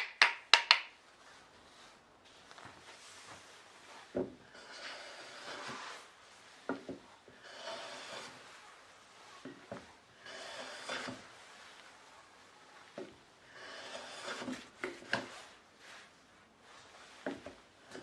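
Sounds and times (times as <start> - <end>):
hand plane swishing on wood: 3.1 - 11.7, 13.6 - 18.0.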